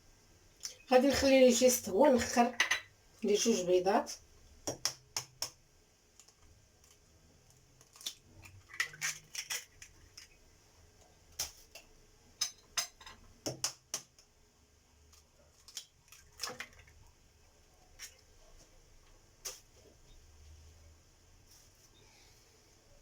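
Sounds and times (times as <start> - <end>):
kitchen utensils clicking and tapping: 2.2 - 2.9, 11.4 - 14.1.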